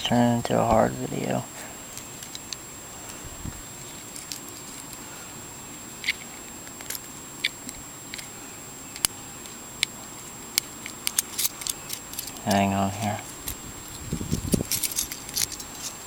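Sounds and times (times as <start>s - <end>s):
faint steady hiss: 0.0s - 16.0s
key clicking in padlock: 10.6s - 12.7s, 13.3s - 16.0s.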